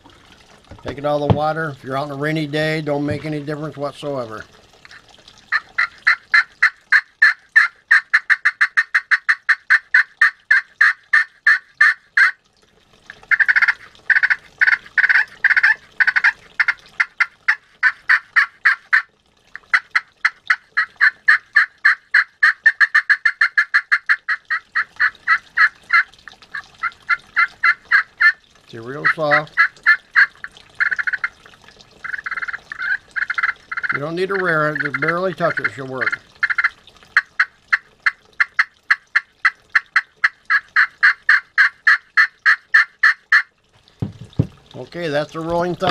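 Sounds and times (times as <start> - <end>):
turkey friction call notes: 4.9 - 12.4, 13.2 - 31.4, 32.0 - 43.5.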